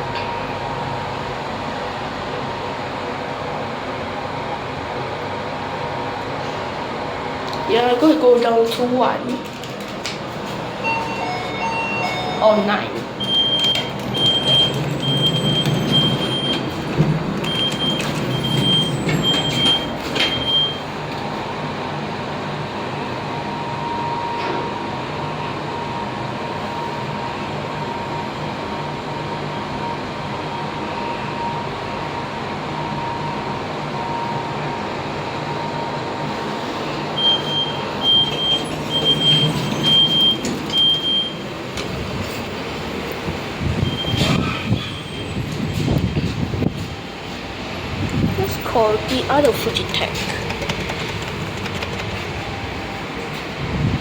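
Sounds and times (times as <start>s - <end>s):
high electronic beeping: 10.8s - 16.8s.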